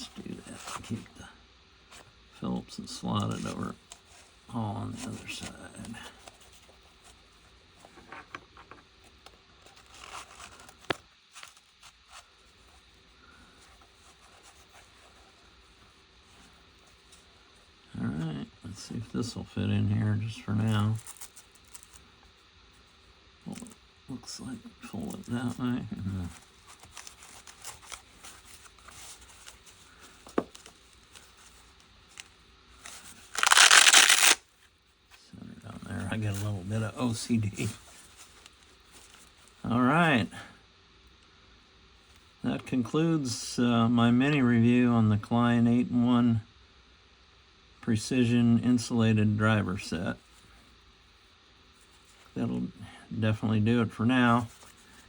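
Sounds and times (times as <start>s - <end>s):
plastic packaging rustling: 26.2s - 34.4s.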